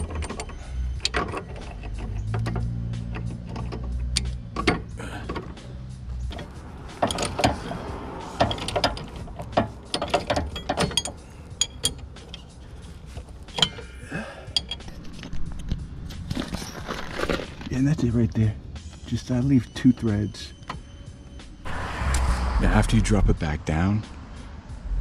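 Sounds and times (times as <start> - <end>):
hand ratchet clicking: 0.0 - 5.6, 6.3 - 15.7
metallic clinks of tools: 6.3 - 12.6, 13.4 - 15.3
low hum: 21.4 - 25.0.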